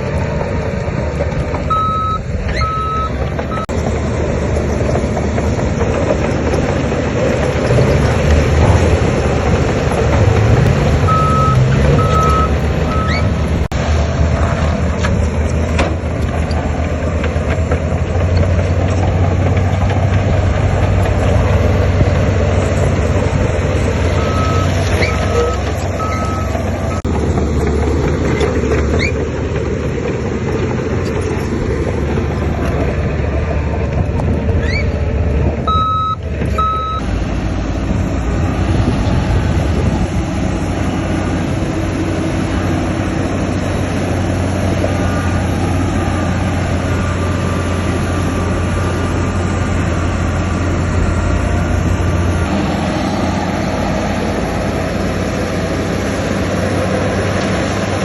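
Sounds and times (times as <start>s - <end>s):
heavy diesel machinery running: 0.0s - 58.0s
reversing alarm beeps: 1.7s - 3.7s, 11.1s - 13.3s, 24.2s - 26.5s, 35.7s - 37.0s.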